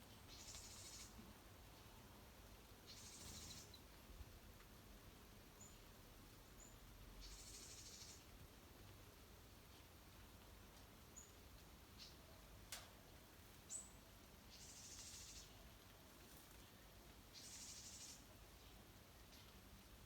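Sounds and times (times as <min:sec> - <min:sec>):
bird chirps: 0:02.9 - 0:03.8.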